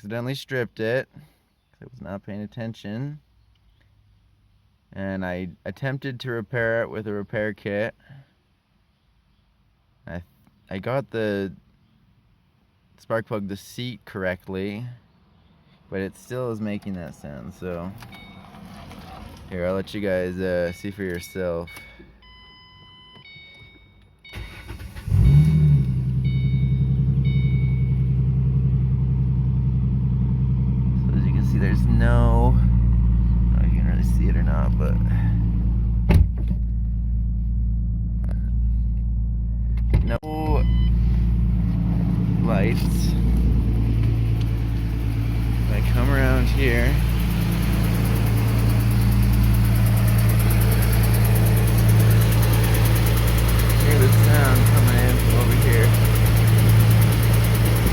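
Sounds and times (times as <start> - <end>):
dashboard warning chime beeping: 18.1 - 18.6, 20.5 - 25.4, 26.2 - 28.1, 40.2 - 41.2
car engine idling with ticking: 40.6 - 57.9
starter cranking: 42.8 - 57.9.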